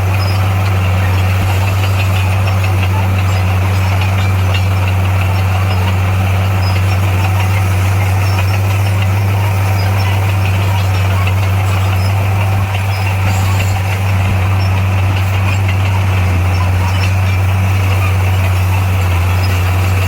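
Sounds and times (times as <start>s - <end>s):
heavy diesel engine drone: 0.0s - 20.0s.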